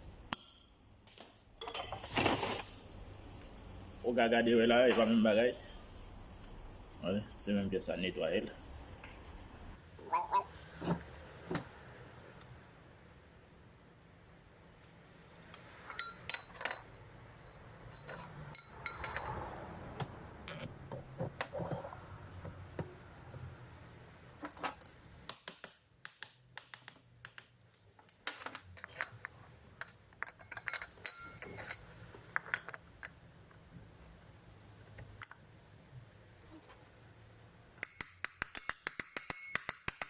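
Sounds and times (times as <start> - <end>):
small metal parts clinking: 15.8 - 19.4, 28.0 - 33.2.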